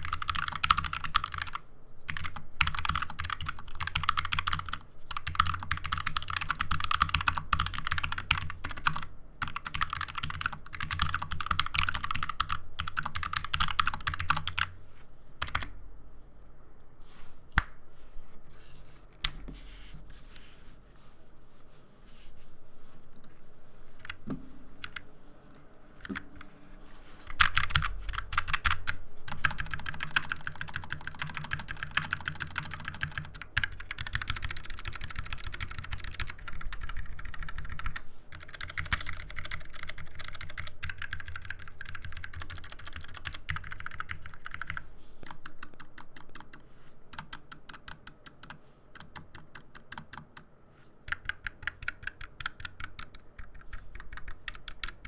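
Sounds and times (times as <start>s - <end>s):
mechanical keyboard typing: 0.0s - 14.7s, 15.4s - 15.7s, 27.3s - 50.4s, 51.1s - 55.0s.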